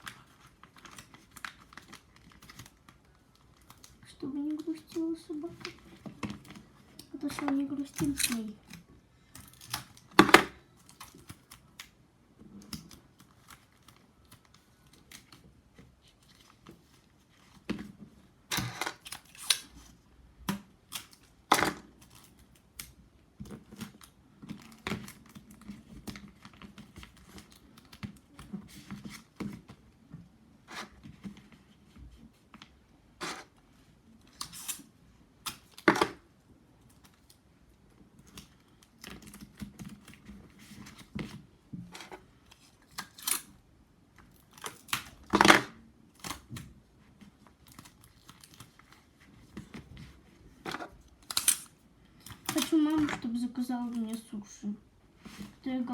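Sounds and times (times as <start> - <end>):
paper rustling: 38.2 - 43.4, 44.2 - 54.4.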